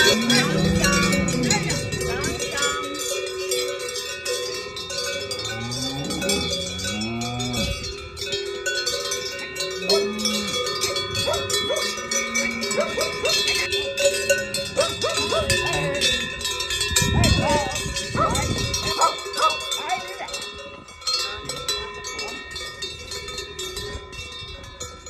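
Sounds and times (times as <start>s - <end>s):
cows mooing: 0.0s - 2.9s, 4.9s - 8.0s, 9.6s - 19.7s
cowbells clanking: 0.0s - 25.0s.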